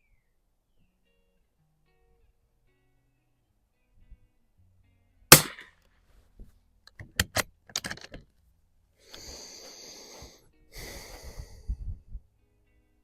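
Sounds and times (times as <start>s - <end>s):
rifle shot: 5.3s - 5.7s.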